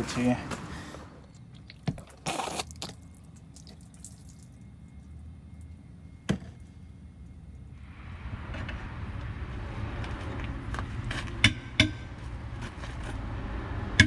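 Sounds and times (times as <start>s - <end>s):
spray bottle squirting: 1.7s - 3.0s.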